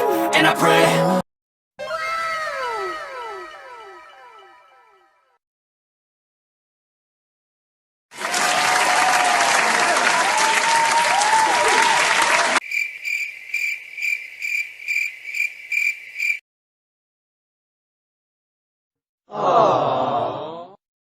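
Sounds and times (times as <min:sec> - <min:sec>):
crowd applauding and cheering: 0:08.1 - 0:12.6
crickets chirping: 0:12.6 - 0:16.4.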